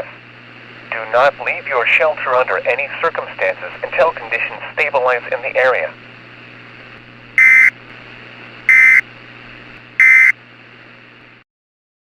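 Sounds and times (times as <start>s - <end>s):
steady hiss and hum: 0.0s - 11.3s
digital data bursts: 7.4s - 7.7s, 8.7s - 9.0s, 10.0s - 10.3s.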